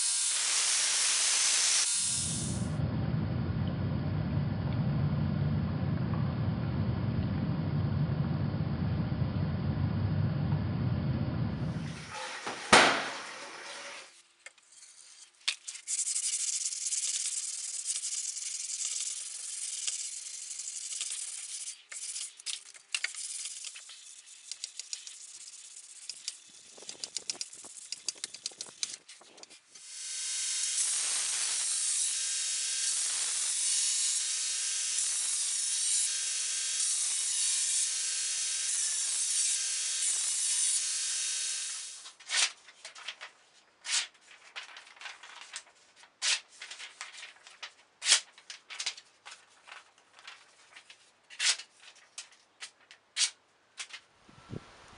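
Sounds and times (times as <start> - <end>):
scratchy rubbing on steel blade: 14.6 - 29.7.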